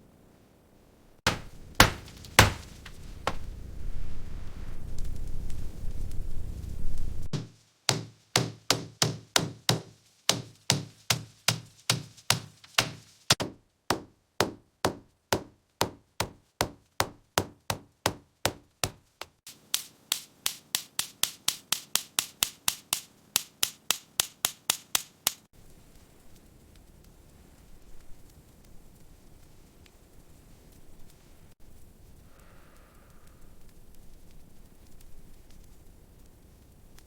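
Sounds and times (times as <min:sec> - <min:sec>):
hand tool strikes: 0:01.3 - 0:03.4, 0:16.6 - 0:25.5.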